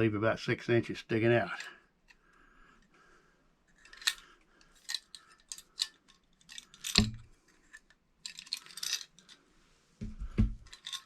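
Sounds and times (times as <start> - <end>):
cable handling clicks and rustles: 3.7 - 9.5, 10.3 - 11.0.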